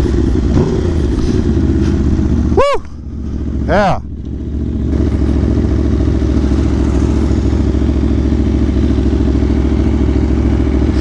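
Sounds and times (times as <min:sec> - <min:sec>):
motorcycle engine rumbling: 0:00.0 - 0:11.0.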